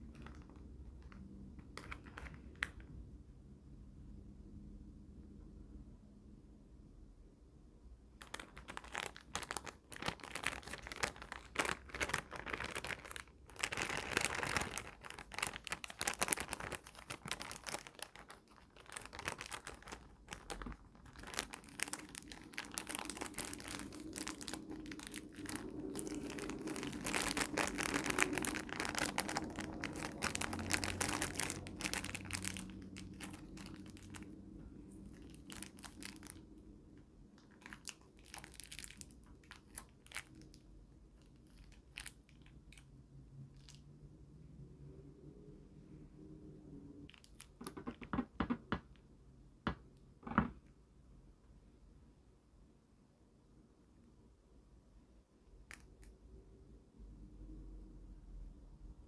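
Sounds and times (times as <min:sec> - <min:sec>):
plastic packaging crinkling: 0:00.0 - 0:02.8, 0:08.2 - 0:36.7, 0:37.4 - 0:42.9, 0:43.5 - 0:43.8, 0:47.1 - 0:48.7.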